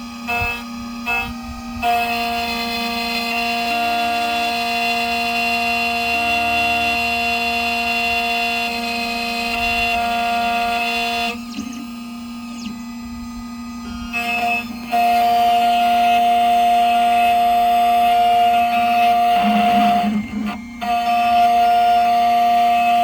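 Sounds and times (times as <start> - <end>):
key-cutting machine whine: 0.0 - 23.0
motor winding down: 0.0 - 23.0.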